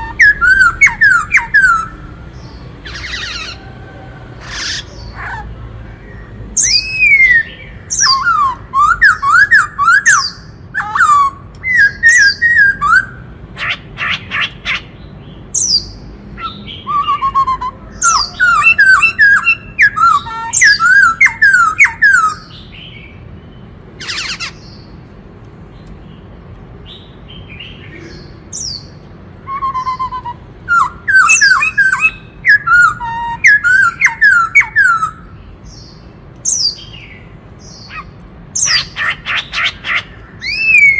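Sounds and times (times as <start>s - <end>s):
bird singing whistled notes: 0.0s - 3.6s, 6.6s - 13.2s, 15.5s - 23.2s, 28.6s - 38.9s, 40.4s - 40.9s.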